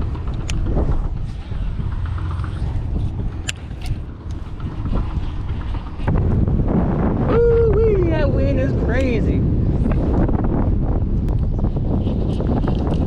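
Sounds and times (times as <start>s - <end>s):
wind buffeting microphone: 0.0s - 13.0s
sharp clicks: 3.4s - 4.4s.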